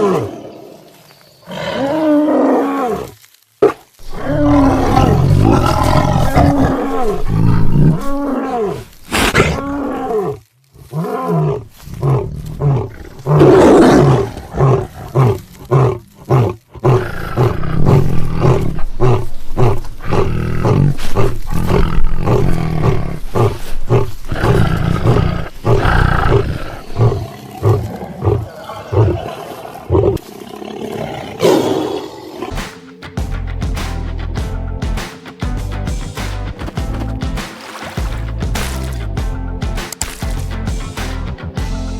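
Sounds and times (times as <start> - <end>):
tiger roaring: 0.0 - 0.8, 1.4 - 3.1, 4.0 - 32.6
tiger growling: 0.0 - 32.6.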